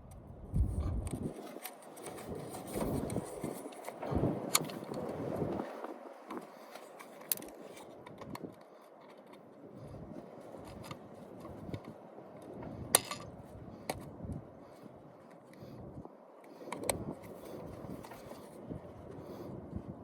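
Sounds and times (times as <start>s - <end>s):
metallic clicks and clinks of tools: 13.0s - 13.3s.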